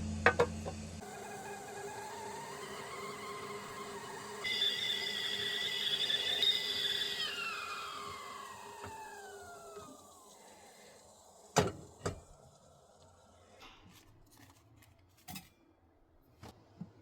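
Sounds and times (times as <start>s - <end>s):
falling whistle: 2.6s - 8.7s.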